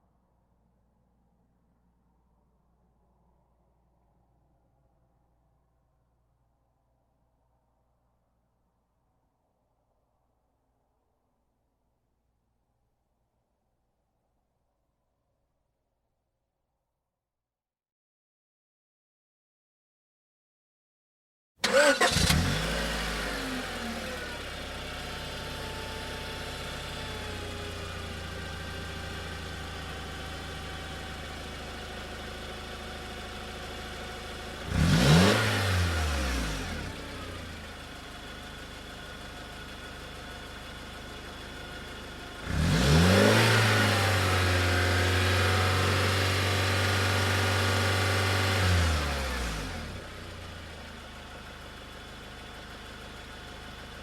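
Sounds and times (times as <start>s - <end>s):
car engine idling and revving: 21.6s - 54.0s
car engine starting: 21.6s - 54.0s.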